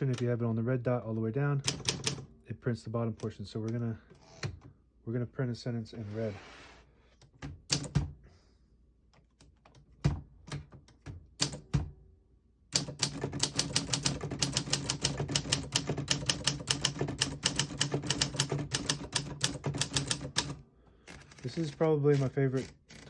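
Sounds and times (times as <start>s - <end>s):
manual typewriter typing: 1.6s - 2.2s, 7.6s - 8.0s, 10.5s - 11.8s, 12.7s - 23.0s.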